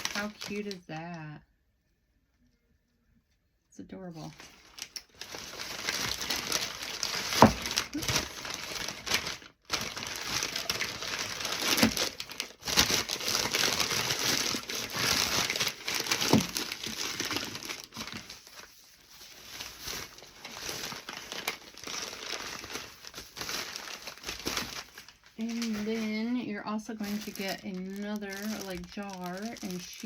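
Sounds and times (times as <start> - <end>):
wrapping paper crinkling: 0.0 - 1.2, 4.3 - 30.0.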